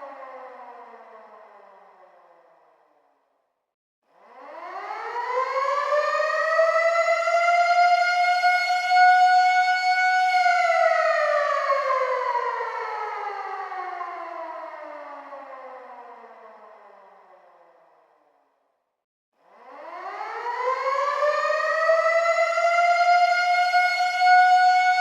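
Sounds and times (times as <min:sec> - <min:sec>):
air raid siren wailing: 0:04.4 - 0:17.0, 0:19.6 - 0:25.0.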